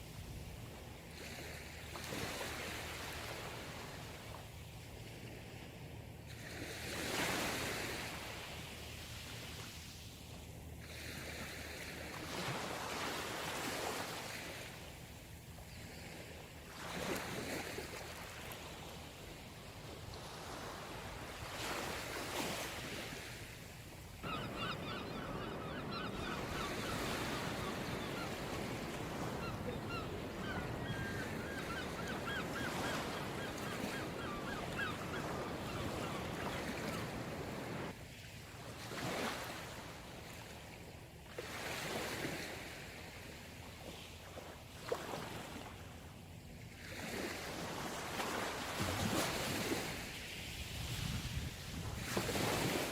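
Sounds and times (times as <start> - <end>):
sea waves breaking on shore: 0.0 - 5.6, 6.3 - 10.2, 10.8 - 46.0, 46.7 - 52.9
birds calling: 24.2 - 37.9.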